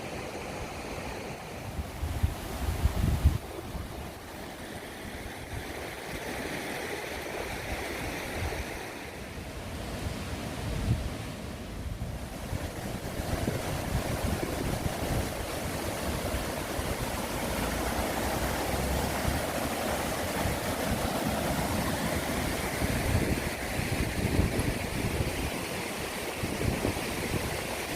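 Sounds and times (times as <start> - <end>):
flowing water rushing: 0.0 - 27.9
wind buffeting microphone: 1.4 - 6.6, 7.2 - 27.9.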